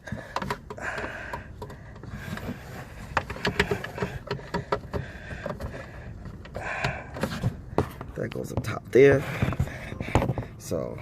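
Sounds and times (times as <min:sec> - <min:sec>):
plastic clicks and knocks: 0:00.1 - 0:08.7.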